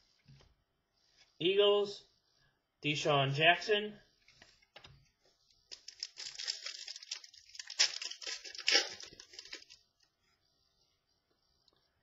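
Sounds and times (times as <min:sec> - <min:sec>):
cards and packaging rustling: 0:05.7 - 0:09.8.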